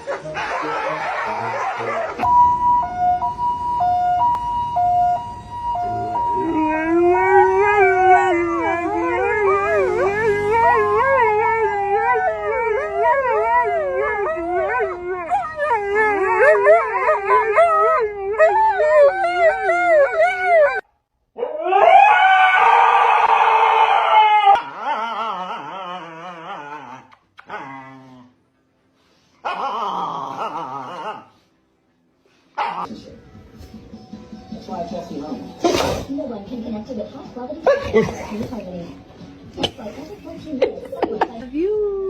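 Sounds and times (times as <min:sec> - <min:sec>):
two-tone siren: 0:02.2 - 0:08.6
dog howling: 0:05.9 - 0:20.8, 0:21.4 - 0:28.0.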